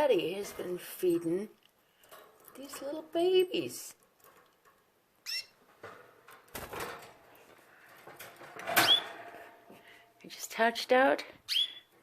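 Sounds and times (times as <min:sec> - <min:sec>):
canary calls: 0:05.2 - 0:05.6, 0:11.5 - 0:11.9.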